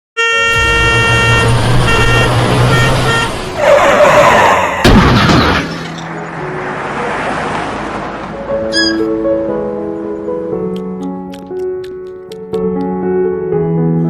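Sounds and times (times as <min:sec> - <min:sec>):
horn-like blaring blasts: 0:00.2 - 0:03.8
sharp bang: 0:04.8 - 0:06.0.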